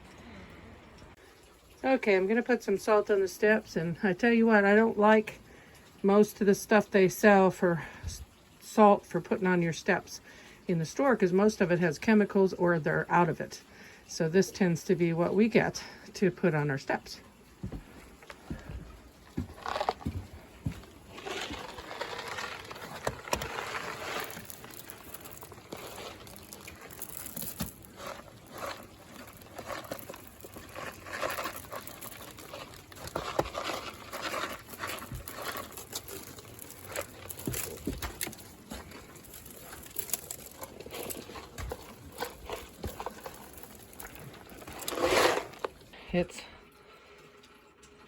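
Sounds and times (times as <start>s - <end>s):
rock salt scattered on snowy steps: 19.4s - 46.0s.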